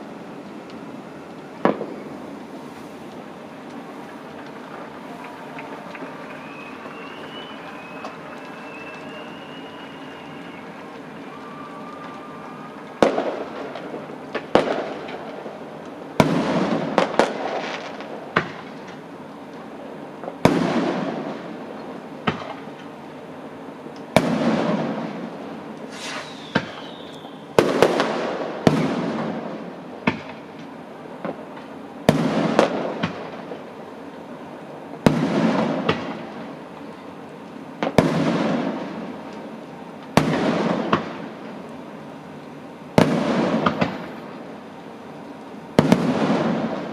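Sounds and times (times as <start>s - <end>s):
fireworks bangs: 1.6s - 19.0s, 20.2s - 22.7s, 24.1s - 30.5s, 32.1s - 33.7s, 35.0s - 36.5s, 37.8s - 39.3s, 40.2s - 41.5s, 43.0s - 44.5s, 45.7s - 46.9s
falling firework whistle: 5.0s - 14.0s, 25.8s - 29.3s.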